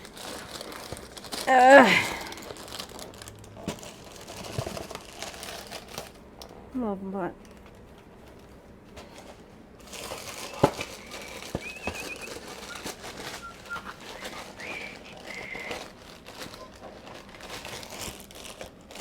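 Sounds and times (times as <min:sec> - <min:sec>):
packet rustling and crinkling: 0:00.0 - 0:06.2, 0:07.5 - 0:19.0
high whistle-like notes: 0:10.4 - 0:15.8.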